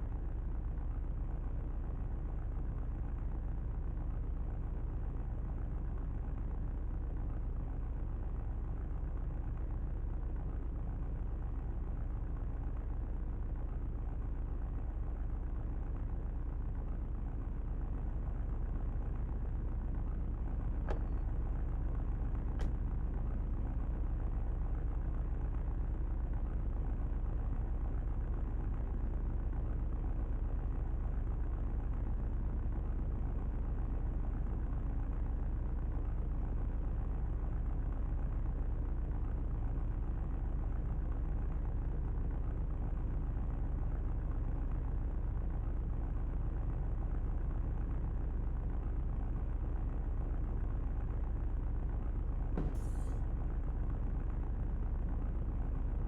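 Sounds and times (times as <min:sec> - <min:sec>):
vehicle engine running: 0:00.0 - 0:56.0
brief hiss: 0:52.6 - 0:53.2.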